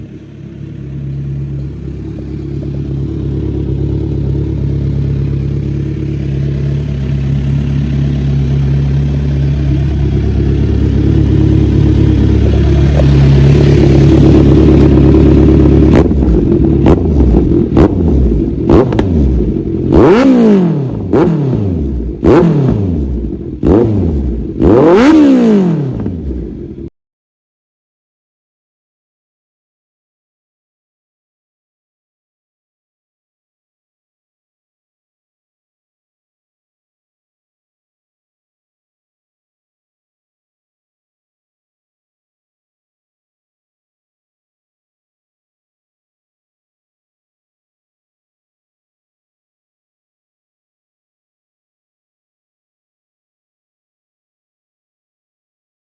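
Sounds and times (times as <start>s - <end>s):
motorcycle engine idling and revving: 0.0s - 26.9s.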